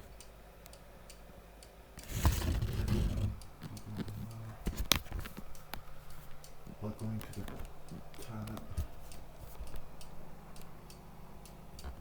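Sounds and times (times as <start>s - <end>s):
rubbing and rustling on wood: 2.0s - 3.4s.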